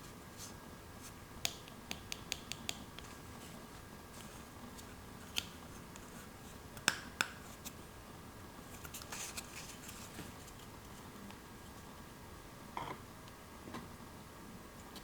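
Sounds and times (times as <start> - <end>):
light scratchy rustle: 8.7 - 11.1.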